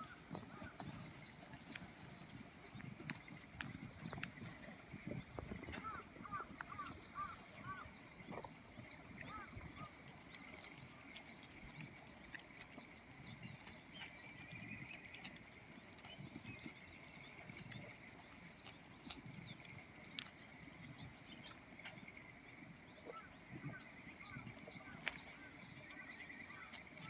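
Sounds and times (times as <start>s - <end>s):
small birds chirping: 0.0s - 27.0s.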